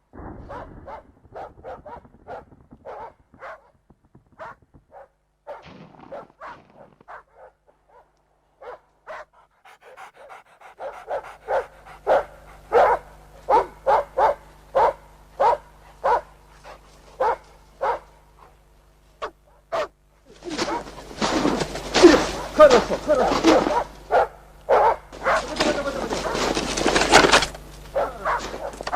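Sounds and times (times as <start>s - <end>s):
hunting dogs barking: 7.2s - 18.3s, 22.2s - 28.9s.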